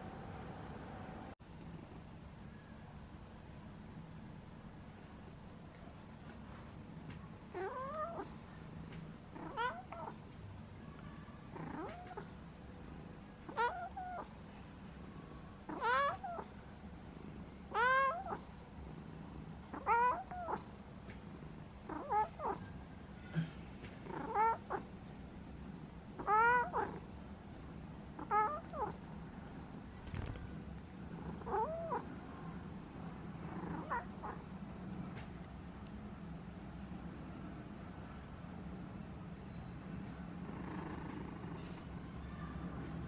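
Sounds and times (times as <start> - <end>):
cat meowing: 7.5 - 8.3, 9.4 - 10.2, 11.5 - 12.3, 13.5 - 14.3, 15.7 - 16.5, 17.7 - 18.5, 19.7 - 20.7, 21.9 - 22.6, 24.0 - 24.9, 26.2 - 27.0, 28.2 - 29.0, 31.2 - 32.1, 33.6 - 34.4.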